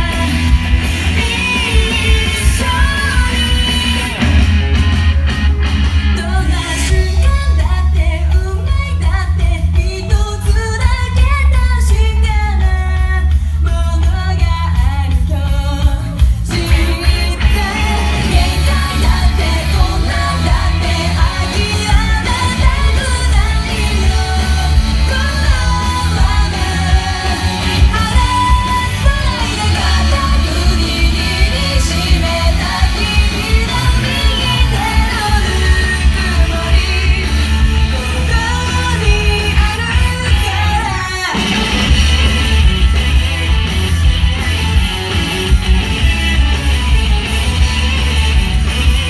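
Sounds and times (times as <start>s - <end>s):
person singing: 0.0s - 4.6s, 6.1s - 42.0s
heavy bass: 0.0s - 49.0s
live pop-rock band playing: 0.0s - 49.0s.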